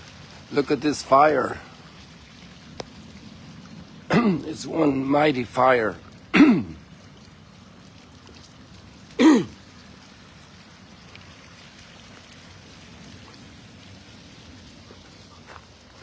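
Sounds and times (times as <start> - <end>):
faint background hiss: 0.0 - 7.1
person clearing throat: 4.1 - 4.8, 6.4 - 6.8, 9.2 - 9.6.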